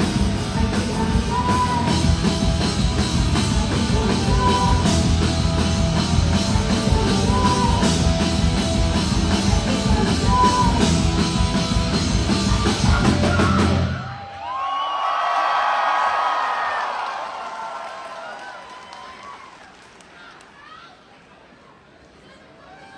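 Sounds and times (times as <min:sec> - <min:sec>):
live rock band playing: 0:00.0 - 0:14.1.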